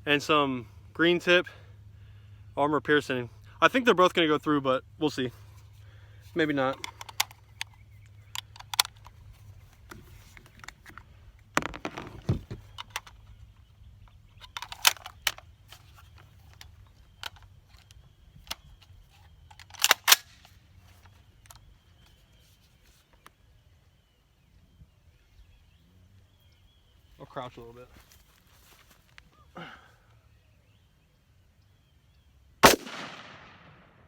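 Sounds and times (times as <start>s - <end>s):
rifle metallic clicks and knocks: 6.6s - 22.2s.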